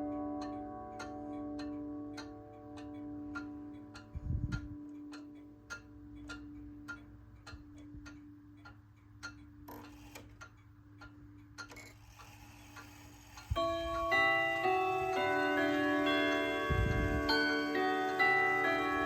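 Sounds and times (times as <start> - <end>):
wall clock ticking: 0.0 - 19.0
chime rods ringing: 13.6 - 19.0.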